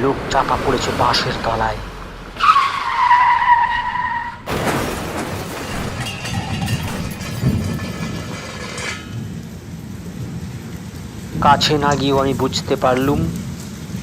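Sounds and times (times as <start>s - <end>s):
tyres screeching: 0.0s - 9.2s
clattering crash: 4.4s - 9.8s.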